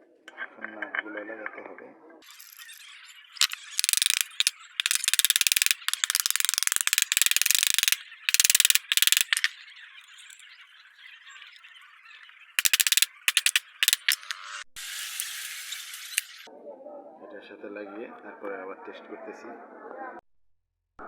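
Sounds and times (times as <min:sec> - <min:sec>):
rapid metallic clicking: 0:03.4 - 0:09.5, 0:12.6 - 0:14.4.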